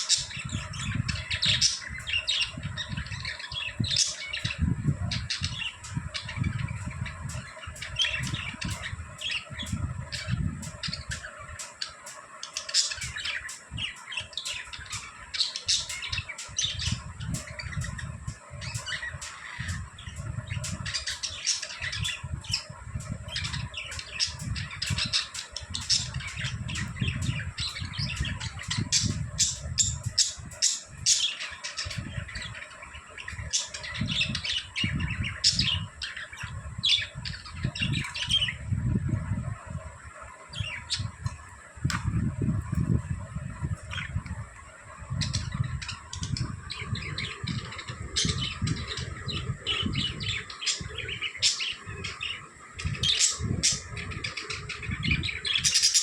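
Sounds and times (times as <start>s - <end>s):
budgerigars chirping: 0.0s - 38.6s, 40.5s - 41.1s, 45.2s - 56.0s
low rumbling bumps: 41.0s - 51.0s.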